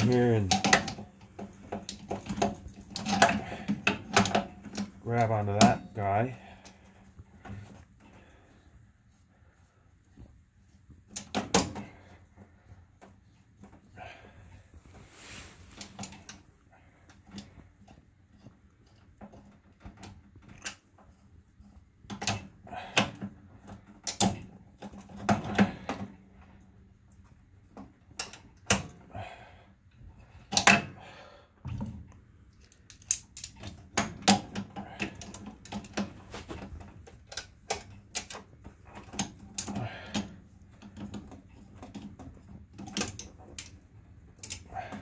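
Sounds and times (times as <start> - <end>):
locking pliers clanking on metal: 0.0 - 1.0, 24.0 - 24.4, 32.9 - 36.0, 42.8 - 43.7, 44.4 - 45.0.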